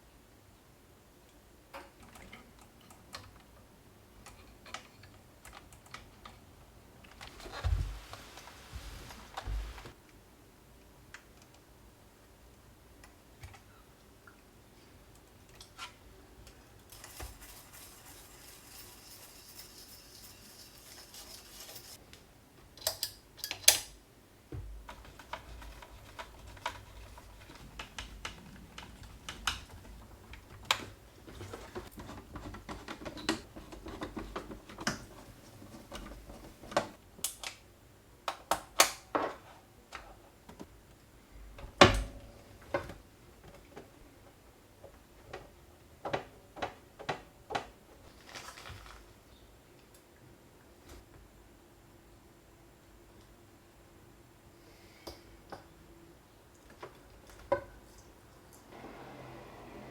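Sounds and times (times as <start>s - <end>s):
clicks and knocks of small parts: 22.8s - 23.9s.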